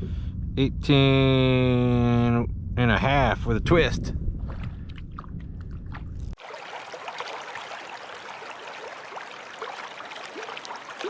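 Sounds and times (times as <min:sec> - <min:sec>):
wind rumbling on microphone: 0:00.0 - 0:06.4
water trickling and bubbling: 0:04.4 - 0:11.0.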